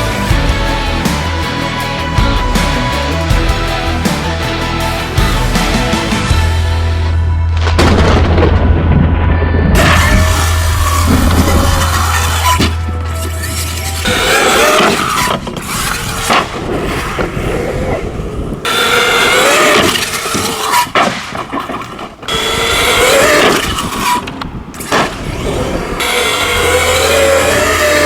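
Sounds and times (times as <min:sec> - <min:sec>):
electric motor whining: 0:09.8 - 0:16.3, 0:18.7 - 0:20.7, 0:22.3 - 0:28.0
sharp knocks from landings: 0:19.6 - 0:22.3.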